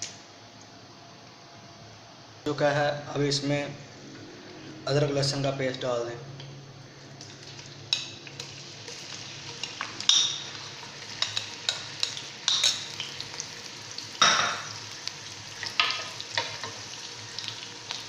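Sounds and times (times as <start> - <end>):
paste sizzling in hot oil: 7.5 - 18.0.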